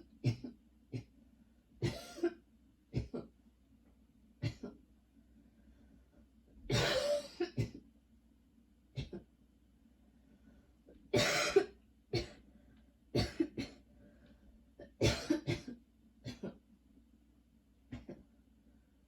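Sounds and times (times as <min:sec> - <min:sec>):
woman coughing: 0:00.2 - 0:01.1, 0:01.8 - 0:02.4, 0:03.0 - 0:03.3, 0:04.4 - 0:04.8, 0:06.7 - 0:07.8, 0:11.2 - 0:12.4, 0:13.2 - 0:13.8, 0:14.8 - 0:16.6.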